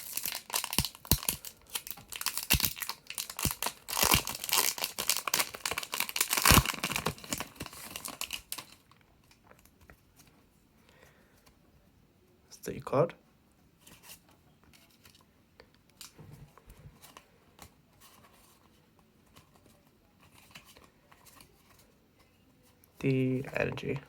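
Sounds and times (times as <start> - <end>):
foil wrapper crinkling and tearing: 0.0 - 9.4.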